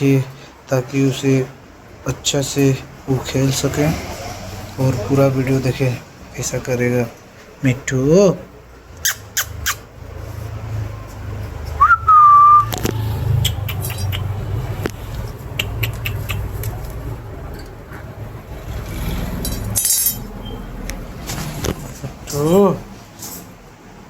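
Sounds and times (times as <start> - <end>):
parrot whistle: 11.8 - 12.8
sharp clicks: 12.7 - 17.0.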